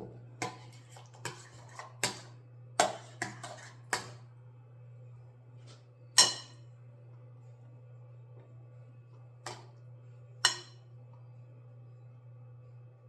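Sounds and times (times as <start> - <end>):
steady low hum: 0.0 - 13.0
utensil clinking on a dish: 6.2 - 6.6, 10.5 - 10.8.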